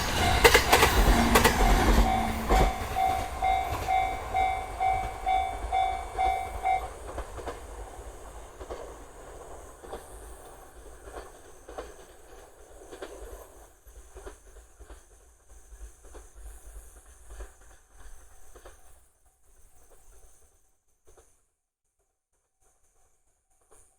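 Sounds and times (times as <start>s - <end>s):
train wheels clacking over joints: 0.0s - 13.4s
low train rumble: 0.0s - 13.6s
level crossing bell dinging: 0.3s - 6.9s.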